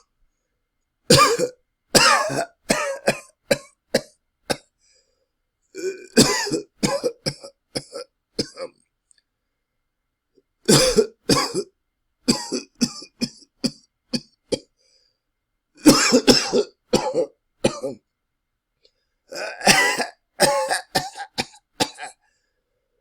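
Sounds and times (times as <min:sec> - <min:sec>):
person coughing loudly: 0:01.1 - 0:04.7, 0:05.8 - 0:08.8, 0:10.7 - 0:11.7, 0:12.3 - 0:14.7, 0:15.8 - 0:18.0, 0:19.3 - 0:22.2.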